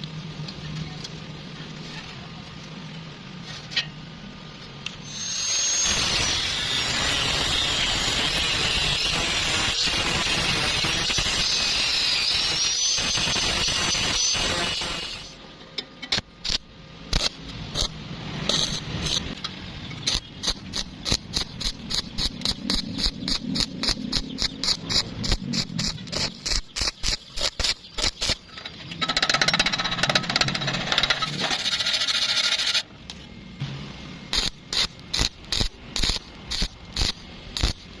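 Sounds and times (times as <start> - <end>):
welding arc crackling: 5.0 - 15.4, 16.1 - 19.4, 20.0 - 32.9, 34.3 - 38.0.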